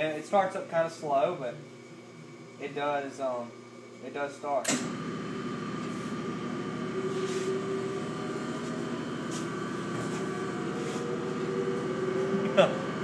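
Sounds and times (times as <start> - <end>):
lathe motor humming: 4.7 - 13.0.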